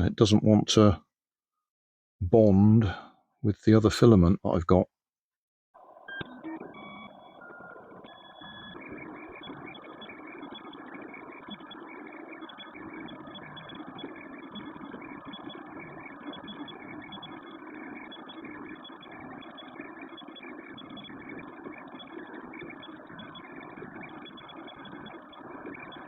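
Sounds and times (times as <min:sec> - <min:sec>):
stuttering motor whine: 0:05.8 - 0:26.0
three d printer humming: 0:05.8 - 0:26.0.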